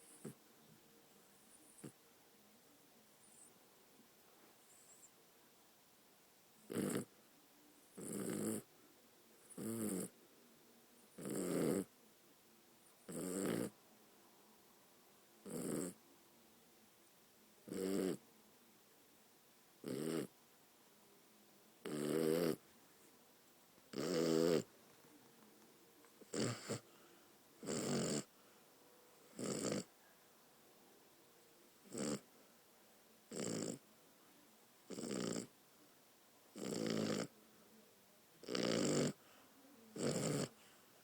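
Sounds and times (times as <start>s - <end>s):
dog snoring: 0.0s - 0.4s, 1.4s - 2.0s, 6.6s - 7.1s, 7.9s - 8.7s, 9.4s - 10.1s, 11.1s - 11.9s, 13.0s - 13.7s, 15.4s - 16.0s, 17.6s - 18.2s, 19.8s - 20.3s, 21.8s - 22.6s, 23.9s - 24.7s, 26.2s - 27.0s, 27.6s - 28.4s, 29.3s - 29.9s, 31.8s - 32.3s, 33.3s - 33.8s, 34.9s - 35.5s, 36.5s - 37.3s, 38.4s - 39.3s, 40.0s - 40.6s.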